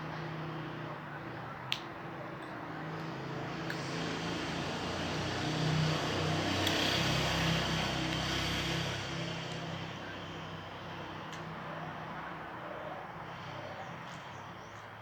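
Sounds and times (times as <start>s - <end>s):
vehicle passing by: 2.9s - 14.5s.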